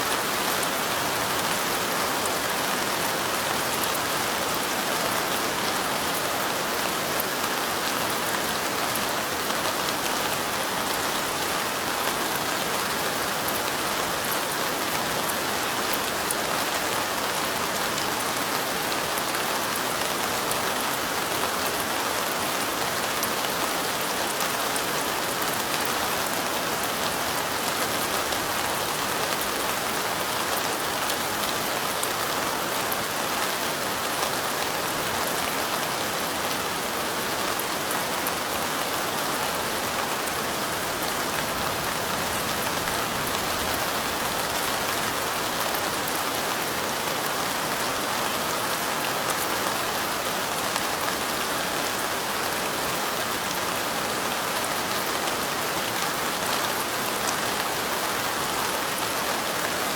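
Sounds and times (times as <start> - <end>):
light rain: 0.0 - 59.9.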